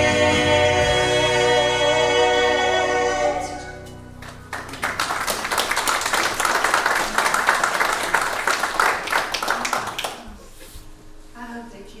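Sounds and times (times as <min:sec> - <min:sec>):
vocal group holding a chord: 0:00.0 - 0:04.1
congregation applauding: 0:04.2 - 0:10.4.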